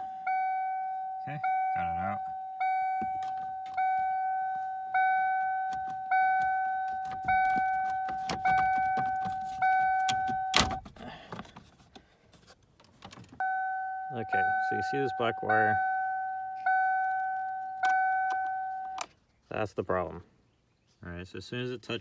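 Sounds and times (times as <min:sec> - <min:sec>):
car warning chime dinging: 0:00.0 - 0:10.8, 0:13.4 - 0:19.1.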